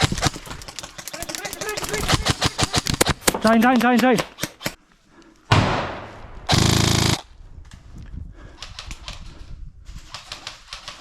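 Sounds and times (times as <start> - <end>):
faint clicks and ticks: 0.0 - 5.4
airsoft gun full-auto burst: 1.6 - 3.2, 6.5 - 7.2.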